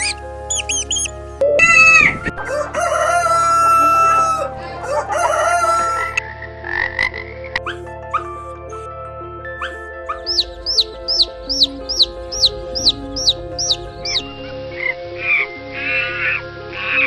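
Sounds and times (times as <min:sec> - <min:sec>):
rooster crowing: 0:02.4 - 0:06.2.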